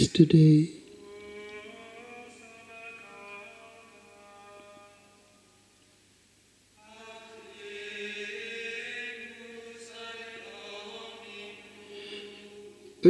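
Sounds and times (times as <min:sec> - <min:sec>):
choir of monks chanting: 0:01.0 - 0:05.1, 0:06.8 - 0:12.8.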